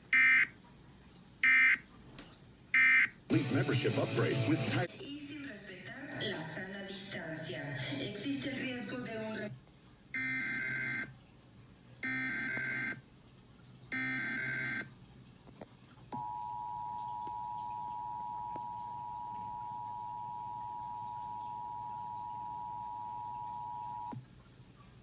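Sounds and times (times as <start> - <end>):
two-tone alert signal: 14.0 - 14.9, 16.2 - 24.1.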